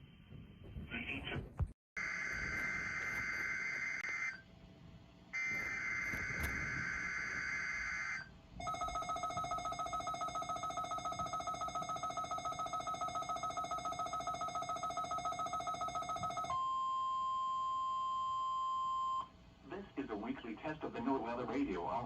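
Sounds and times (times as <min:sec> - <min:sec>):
pulsing buzzy alarm tone: 0:02.0 - 0:04.4, 0:05.4 - 0:14.9
steady single-pitch alarm tone: 0:02.0 - 0:04.4, 0:05.4 - 0:19.3.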